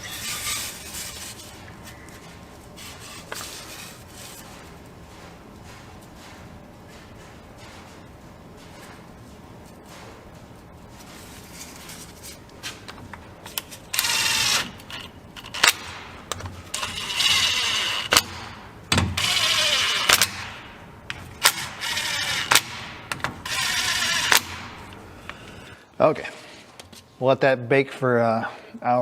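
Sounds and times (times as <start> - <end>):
power tool ratcheting whir: 13.9 - 16.0, 16.7 - 18.5, 19.1 - 20.5, 21.4 - 24.7.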